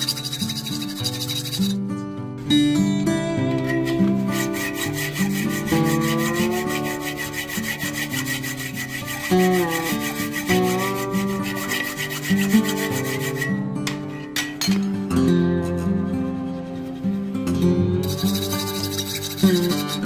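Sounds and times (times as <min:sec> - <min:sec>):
fast rasping workshop noise: 0:00.0 - 0:01.8, 0:03.6 - 0:13.6, 0:18.0 - 0:20.0
acoustic guitar music: 0:00.0 - 0:20.0.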